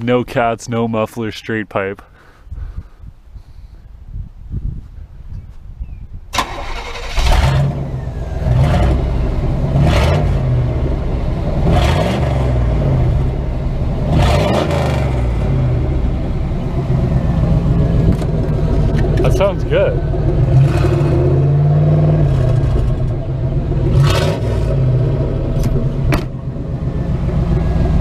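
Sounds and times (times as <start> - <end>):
car engine starting: 6.3 - 28.0
loud engine revving: 6.4 - 28.0.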